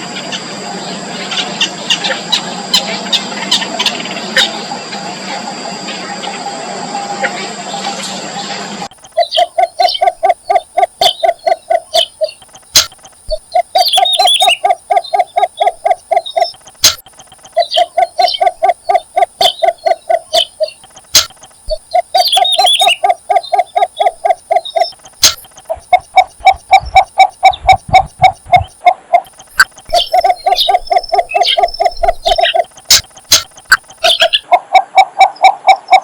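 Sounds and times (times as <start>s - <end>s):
bird clucking calls: 8.9s - 36.0s
squeaky bird chirps: 8.9s - 36.0s.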